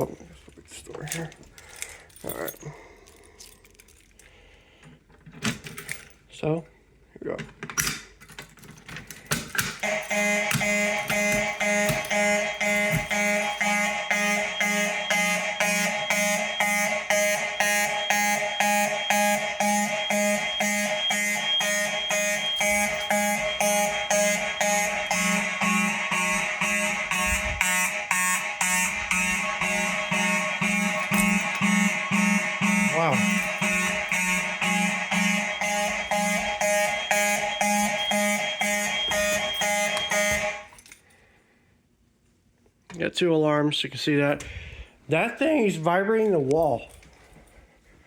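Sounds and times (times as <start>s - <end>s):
fire alarm horns pulsing: 9.7s - 40.8s
alarm horn tone: 9.8s - 40.7s.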